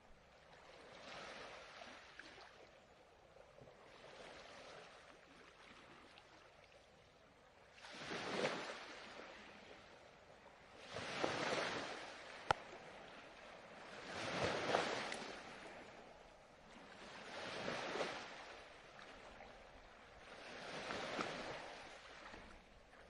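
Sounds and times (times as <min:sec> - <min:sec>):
ocean waves washing onto shore: 0:07.7 - 0:23.0.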